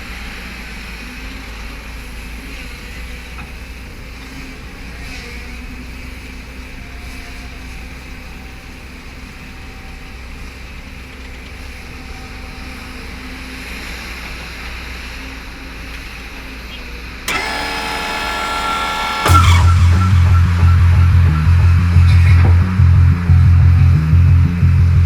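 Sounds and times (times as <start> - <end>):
excavator diesel engine running: 17.3 - 25.0.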